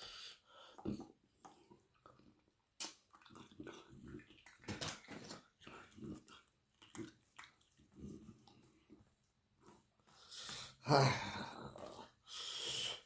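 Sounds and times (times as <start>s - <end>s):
wet chewing: 0.8s - 10.1s.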